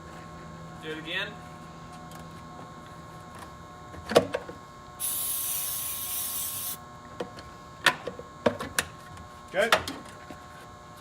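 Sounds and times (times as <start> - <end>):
spray hissing: 5.0 - 6.8.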